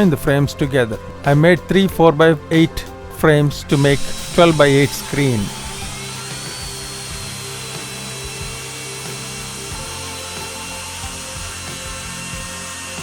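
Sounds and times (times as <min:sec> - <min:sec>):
power tool motor whining: 0:03.7 - 0:13.0.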